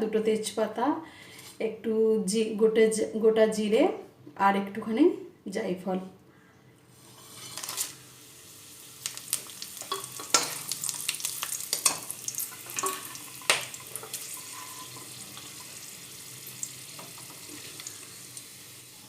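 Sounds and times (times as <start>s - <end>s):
spices sizzling in oil: 7.0s - 19.0s
spices crackling: 8.7s - 18.6s.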